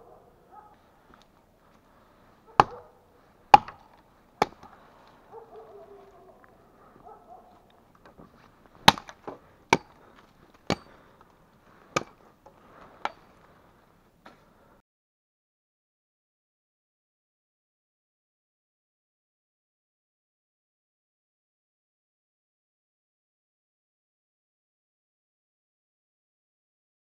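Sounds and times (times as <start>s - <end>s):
axe chopping wood: 2.5s - 2.9s, 3.5s - 4.8s, 8.7s - 11.2s, 11.8s - 12.2s.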